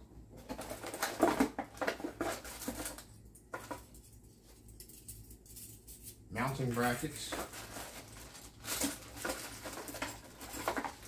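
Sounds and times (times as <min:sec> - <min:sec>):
packaging rustling: 0:00.5 - 0:04.0, 0:07.2 - 0:11.0.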